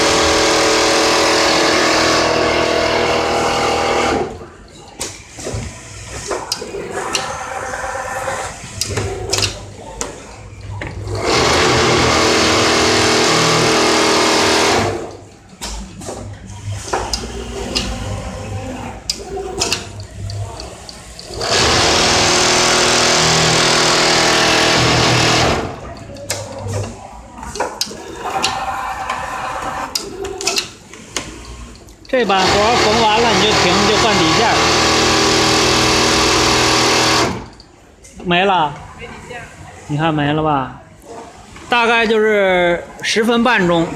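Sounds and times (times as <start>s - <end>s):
sewing machine clicking and clattering: 10.8s - 37.6s.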